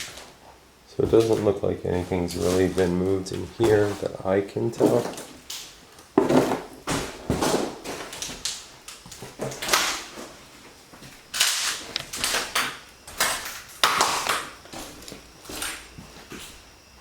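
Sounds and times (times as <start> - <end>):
scuffing and rustling: 1.0 - 5.4.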